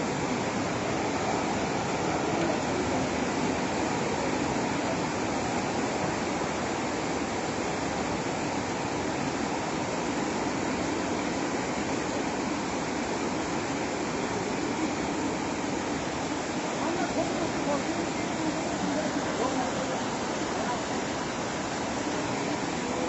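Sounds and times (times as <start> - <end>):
river rushing in flood: 0.0 - 23.0.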